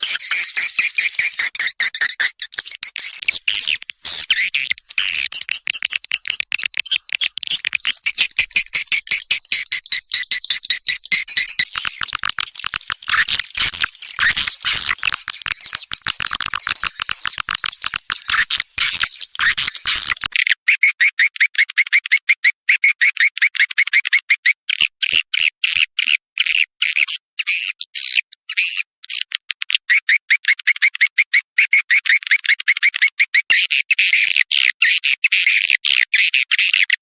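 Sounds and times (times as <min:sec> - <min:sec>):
swiftlets twittering: 0:00.0 - 0:20.2.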